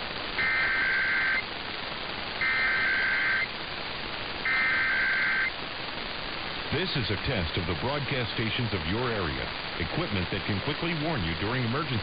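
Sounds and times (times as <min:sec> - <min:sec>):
radio hiss: 0:00.0 - 0:12.0
screeching digital data tones: 0:00.4 - 0:01.5, 0:02.4 - 0:03.5, 0:04.4 - 0:05.6.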